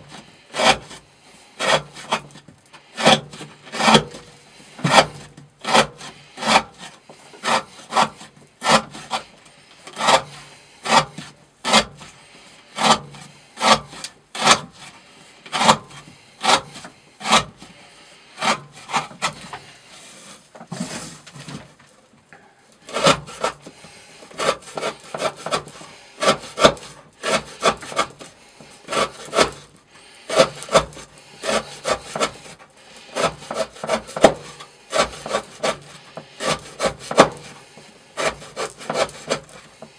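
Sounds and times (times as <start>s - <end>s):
knife cutting through rope: 4.9s - 9.3s, 15.5s - 17.6s, 22.8s - 23.7s, 24.3s - 29.7s, 30.3s - 39.6s.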